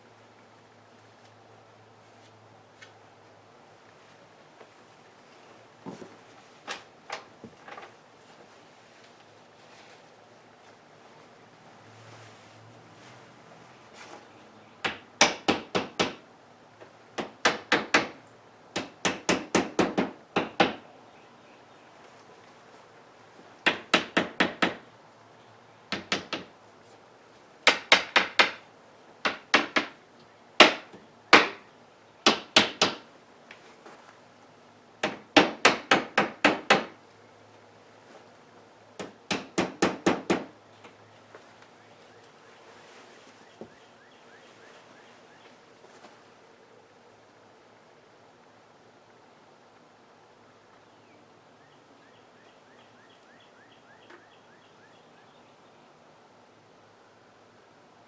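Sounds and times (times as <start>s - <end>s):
hammer tapping on wooden frame: 14.8s - 16.2s, 17.2s - 18.2s, 18.8s - 20.8s, 23.6s - 24.9s, 25.9s - 26.5s, 27.6s - 28.6s, 29.2s - 30.0s, 30.6s - 31.6s, 32.2s - 33.1s, 35.0s - 37.0s, 39.0s - 40.6s.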